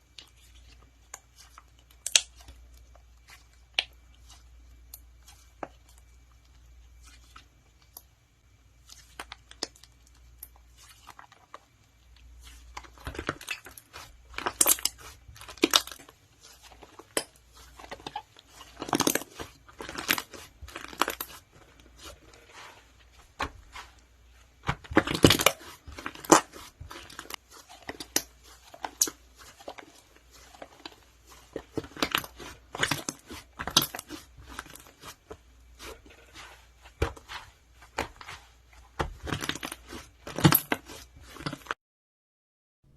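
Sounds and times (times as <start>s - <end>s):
slime crackling and popping: 1.0s - 2.6s, 9.0s - 22.8s, 23.4s - 41.8s.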